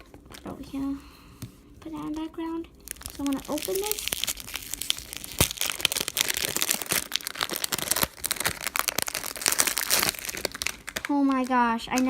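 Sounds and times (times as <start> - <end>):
plastic packaging crinkling and tearing: 0.0 - 0.8, 2.0 - 12.0.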